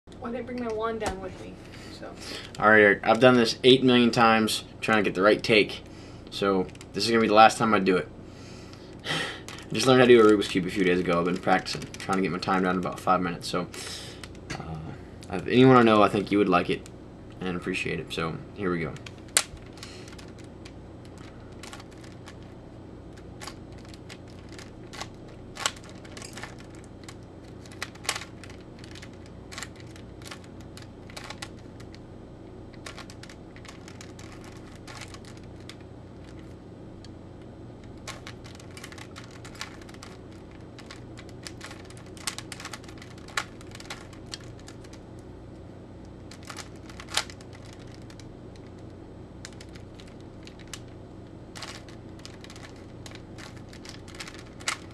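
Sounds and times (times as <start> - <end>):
steady low hum: 0.0 - 54.9
plastic puzzle cube clicking: 23.4 - 31.6, 38.1 - 40.2, 40.8 - 45.0, 51.6 - 54.9.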